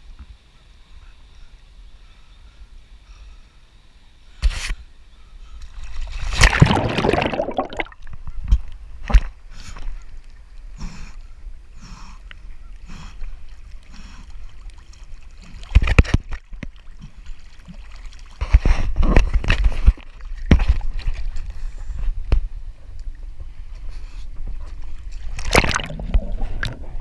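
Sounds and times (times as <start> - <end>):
water splashing around canoe: 5.8 - 8.1, 12.5 - 22.6, 23.4 - 27.0.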